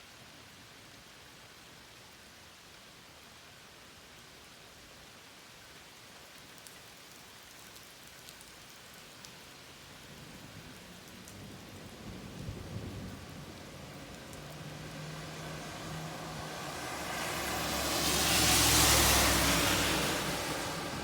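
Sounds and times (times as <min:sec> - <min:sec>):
steady rain: 0:00.0 - 0:21.0
raindrop ticks: 0:06.2 - 0:09.5, 0:10.5 - 0:19.6.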